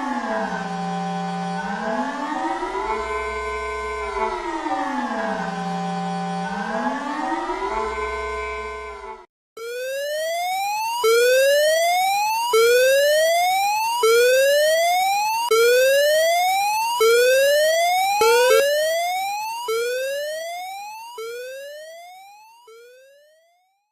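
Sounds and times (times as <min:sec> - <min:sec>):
rising electronic siren: 0:09.6 - 0:23.5.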